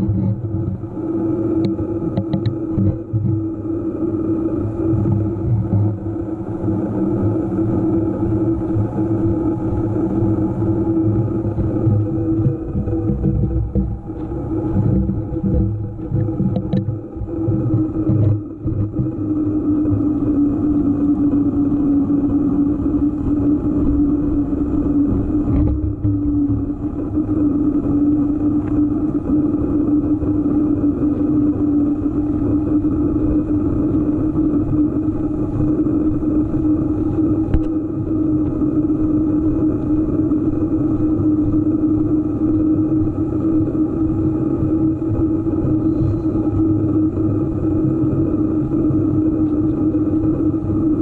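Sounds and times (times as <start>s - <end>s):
low rumble: 0.0s - 39.8s
steady humming: 0.0s - 51.0s.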